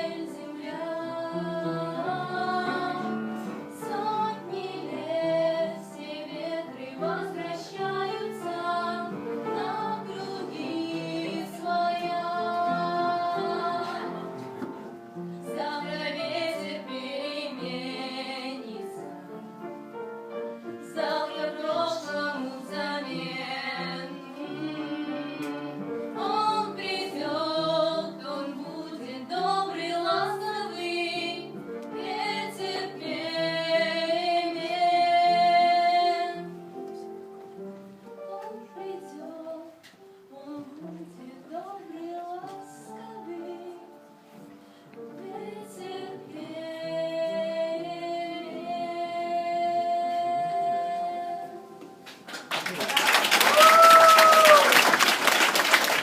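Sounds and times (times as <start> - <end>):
instrumental accompaniment of held notes: 0.0 - 52.6
woman singing: 21.0 - 36.6, 38.2 - 44.0, 45.2 - 51.9.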